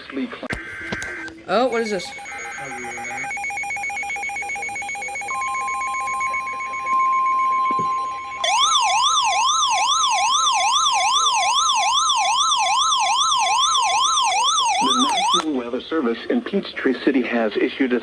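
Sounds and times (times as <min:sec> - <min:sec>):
buzzy alert tone: 0:01.7 - 0:08.9
steady high alarm tone: 0:01.7 - 0:15.4
warbling siren tone: 0:01.7 - 0:15.4.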